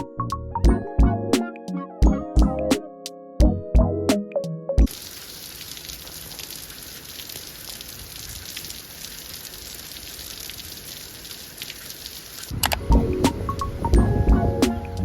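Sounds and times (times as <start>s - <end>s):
keyboard background music: 0.0s - 4.9s, 12.6s - 15.0s
steady hiss with crackles: 4.9s - 14.0s.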